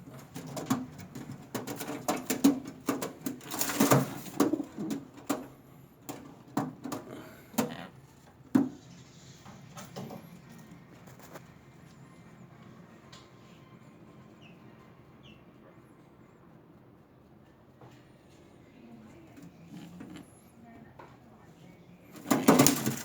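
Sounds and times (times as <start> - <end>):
pigeons cooing: 0.0 - 6.2, 6.8 - 8.8, 22.2 - 23.0
wing rustling flurry: 0.2 - 8.2, 22.1 - 23.0.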